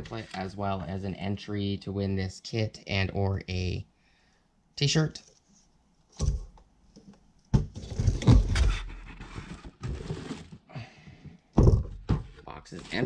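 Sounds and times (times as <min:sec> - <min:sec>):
knock: 0:11.6 - 0:12.3.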